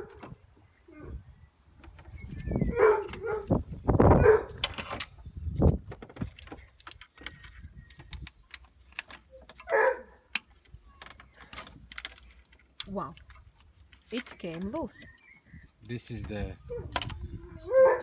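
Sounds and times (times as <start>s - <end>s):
metal tools clinking on engine: 4.5s - 5.3s, 6.2s - 15.2s, 15.9s - 17.3s.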